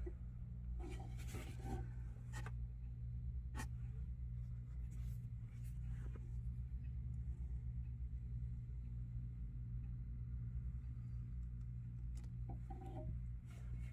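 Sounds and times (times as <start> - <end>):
steady low hum: 0.0 - 13.9
faint handling clicks and rubbing: 0.8 - 2.6.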